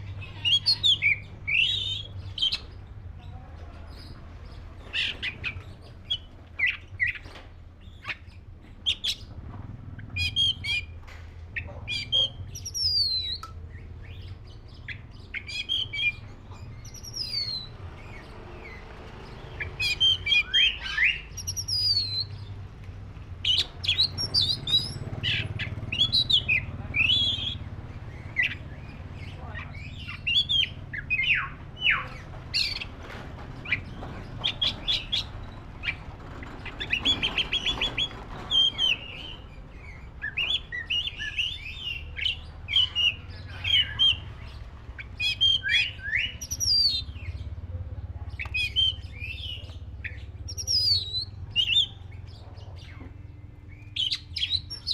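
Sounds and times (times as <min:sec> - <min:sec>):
bird singing whistles and chirps: 0:11.9 - 0:18.8, 0:19.7 - 0:22.5, 0:23.4 - 0:32.9, 0:36.6 - 0:47.4, 0:48.4 - 0:52.0, 0:53.7 - 0:54.9.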